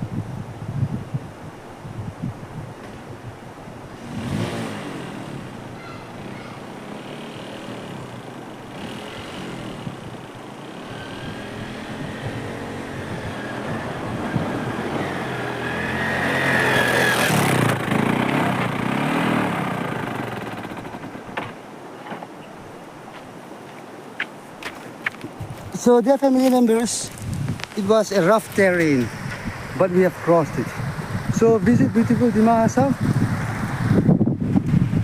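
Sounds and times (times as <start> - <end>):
motorcycle engine revving: 3.9 - 21.4, 28.1 - 35.0.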